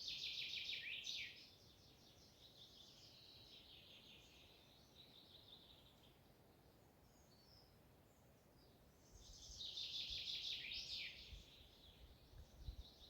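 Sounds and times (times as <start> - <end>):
songbird singing: 0.0 - 13.0.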